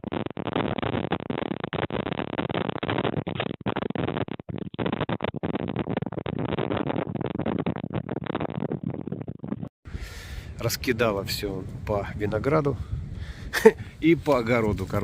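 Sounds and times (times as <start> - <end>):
gusty wind buffeting microphone: 9.9 - 15.0.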